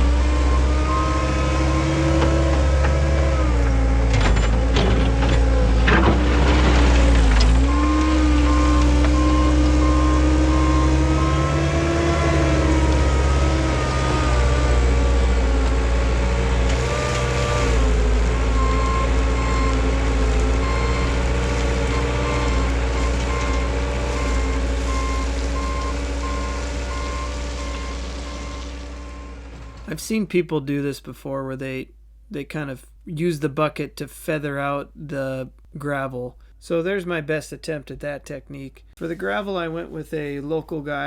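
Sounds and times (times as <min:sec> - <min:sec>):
reversing alarm beeping: 0:00.0 - 0:02.7, 0:07.6 - 0:14.4, 0:18.6 - 0:19.8, 0:20.6 - 0:21.2, 0:21.9 - 0:29.9
loader engine revving: 0:00.0 - 0:30.0.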